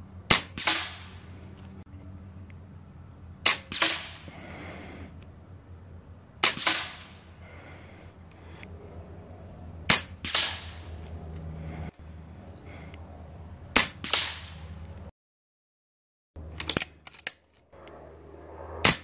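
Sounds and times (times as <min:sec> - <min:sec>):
air rifle shots: 0:00.3 - 0:01.4, 0:03.4 - 0:04.9, 0:06.4 - 0:07.6, 0:09.9 - 0:11.0, 0:13.7 - 0:14.7.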